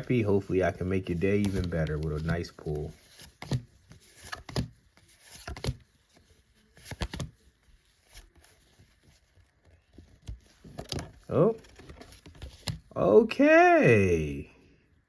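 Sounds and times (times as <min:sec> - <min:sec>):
cards rustling and tapping: 0:00.0 - 0:13.0.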